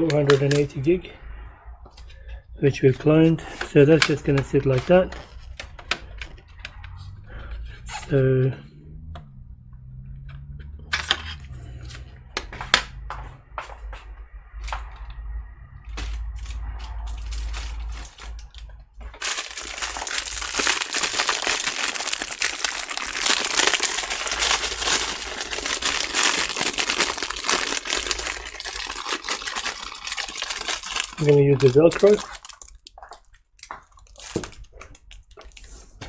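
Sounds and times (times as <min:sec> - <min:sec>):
packaging crinkling and rustling: 0:00.0 - 0:00.7, 0:16.0 - 0:36.0.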